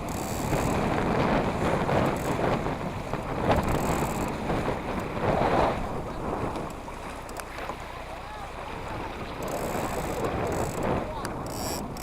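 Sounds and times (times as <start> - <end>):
water splashing and rushing: 0.0 - 12.0
wind buffeting microphone: 0.0 - 12.0.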